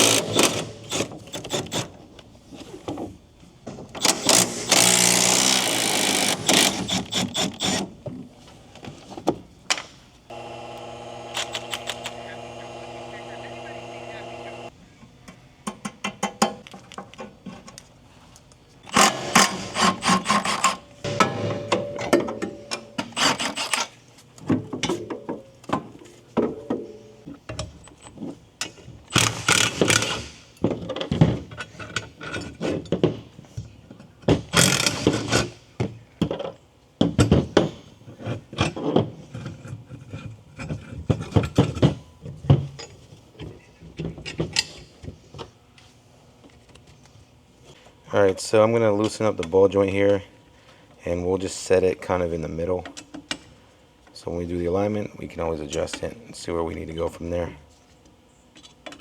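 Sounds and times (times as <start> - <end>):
metallic clanks and scraping: 18.9 - 23.9.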